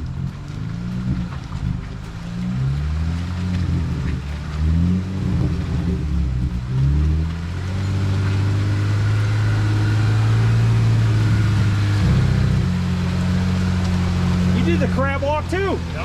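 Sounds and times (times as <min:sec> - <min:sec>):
engine running at low revs: 0:00.0 - 0:16.0.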